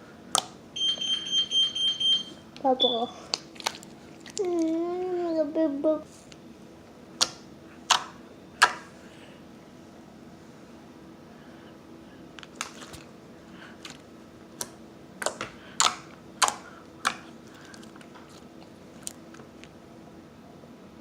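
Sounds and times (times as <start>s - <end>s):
slime worked by hand: 3.3s - 5.0s.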